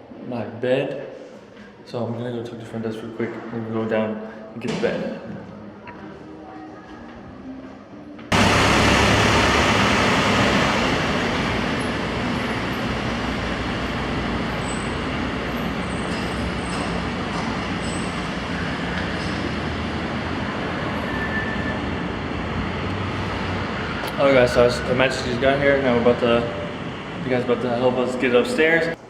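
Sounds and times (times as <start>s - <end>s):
loud road traffic: 8.3s - 29.0s.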